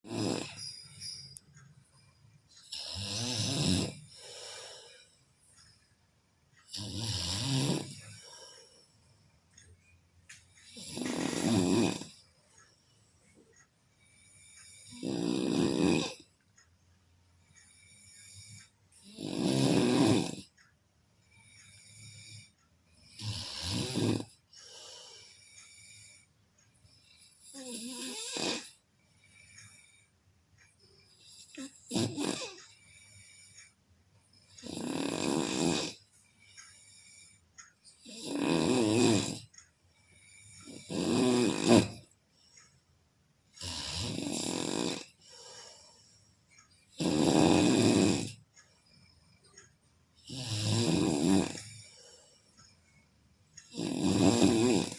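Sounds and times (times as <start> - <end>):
person snoring: 0.0 - 1.2, 2.6 - 5.1, 6.7 - 8.6, 10.6 - 12.2, 14.1 - 16.3, 17.7 - 20.5, 21.6 - 26.3, 27.0 - 28.8, 31.2 - 33.6, 34.6 - 36.0, 38.0 - 39.5, 40.2 - 42.1, 43.6 - 45.9, 46.9 - 48.4, 50.2 - 52.2, 53.7 - 54.9
soft breathing: 0.4 - 2.6, 3.9 - 6.7, 7.8 - 11.5, 12.1 - 15.0, 17.4 - 19.0, 21.1 - 23.2, 24.4 - 27.6, 28.7 - 31.8, 32.4 - 34.6, 36.0 - 38.0, 39.5 - 40.9, 45.0 - 46.9, 51.5 - 53.7.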